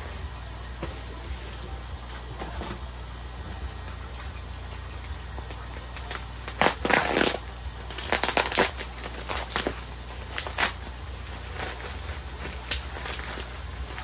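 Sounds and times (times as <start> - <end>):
low hum: 0.0 - 14.0
packaging crinkling: 6.0 - 14.0.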